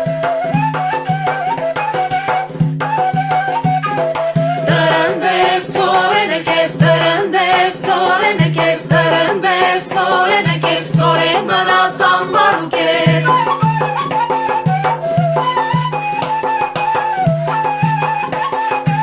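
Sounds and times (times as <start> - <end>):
voices singing together: 4.6 - 13.7
regular beat: 4.7 - 13.6.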